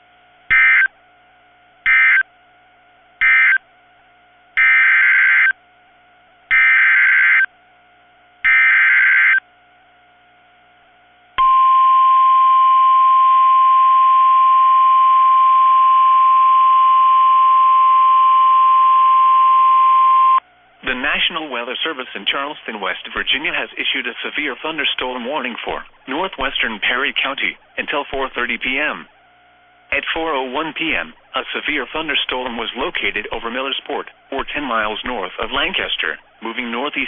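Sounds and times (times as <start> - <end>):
screechy digital data bursts: 0.5 - 0.9, 1.9 - 2.2, 3.2 - 3.6, 4.6 - 5.6, 6.5 - 7.5, 8.5 - 9.4
steady alarm tone: 0.5 - 1.0, 1.8 - 2.3, 3.2 - 3.7, 4.6 - 5.6, 6.5 - 7.6, 8.4 - 9.5, 11.4 - 20.5, 23.2 - 37.0.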